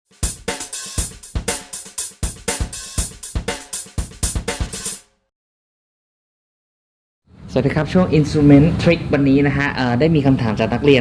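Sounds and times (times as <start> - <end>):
drum kit playing a groove: 0.0 - 5.1.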